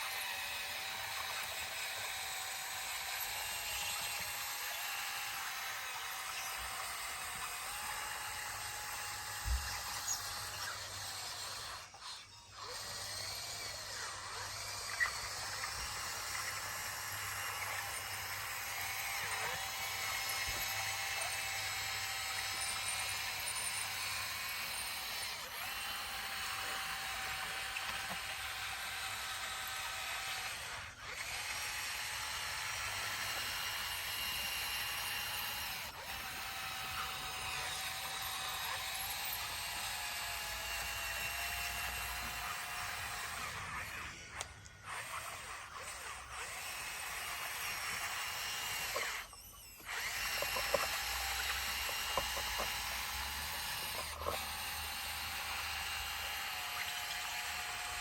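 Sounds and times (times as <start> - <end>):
machine motor whining: 0.0 - 58.0.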